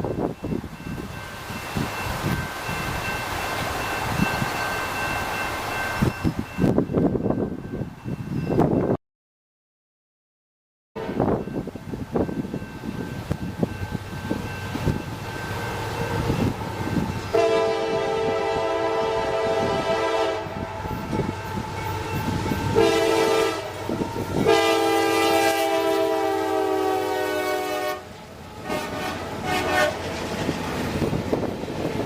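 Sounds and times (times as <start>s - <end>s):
freight train rumbling: 0.0s - 9.0s, 11.0s - 32.0s
locomotive air horn blasts: 11.0s - 11.4s, 17.3s - 21.8s, 22.6s - 30.1s.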